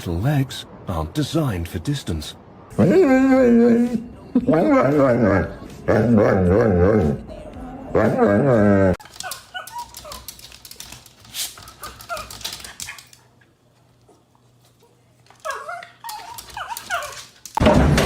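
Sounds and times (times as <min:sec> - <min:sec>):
dog whining: 0:02.7 - 0:07.3, 0:08.0 - 0:10.4, 0:11.7 - 0:13.2, 0:15.4 - 0:17.4.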